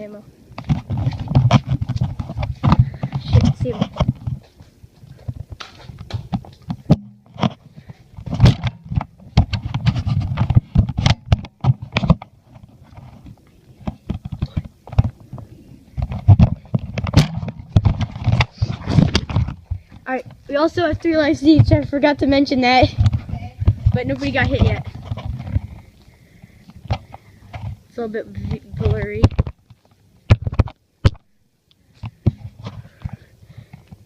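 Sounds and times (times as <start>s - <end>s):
running footsteps: 0.6s - 27.8s.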